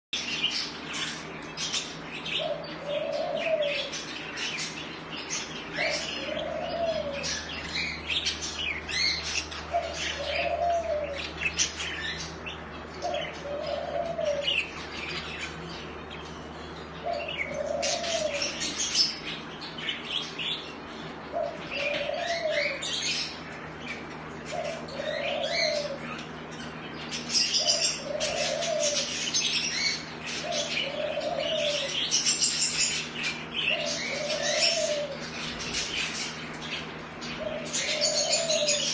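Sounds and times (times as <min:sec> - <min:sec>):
budgies chattering and chirping: 0:00.2 - 0:38.9
low coo: 0:02.4 - 0:04.0, 0:05.8 - 0:07.6, 0:09.7 - 0:11.3, 0:13.0 - 0:14.6, 0:17.0 - 0:19.0, 0:21.3 - 0:23.2, 0:24.5 - 0:26.2, 0:27.5 - 0:29.3, 0:30.4 - 0:32.1, 0:33.7 - 0:36.1, 0:37.4 - 0:38.9.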